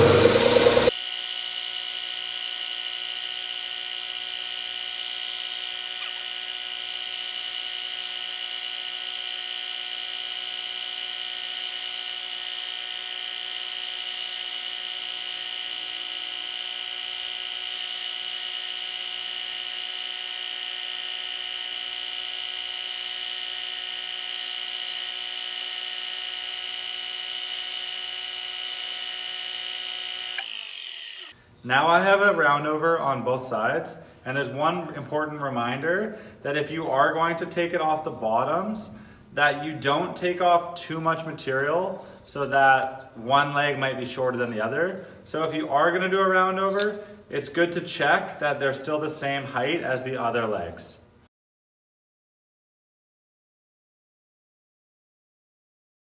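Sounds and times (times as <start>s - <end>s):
sander motor whining: 0.0s - 0.9s.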